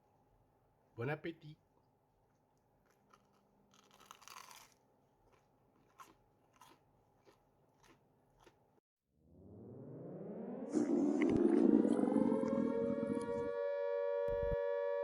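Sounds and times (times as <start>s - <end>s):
soft chewing clicks: 2.3s - 8.6s
crunch of biting crisp food: 2.8s - 8.7s.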